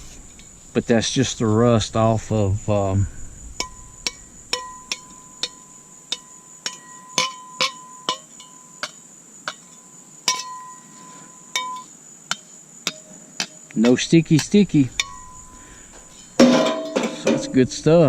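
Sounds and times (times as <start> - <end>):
high insect-like drone: 0.0 - 18.0.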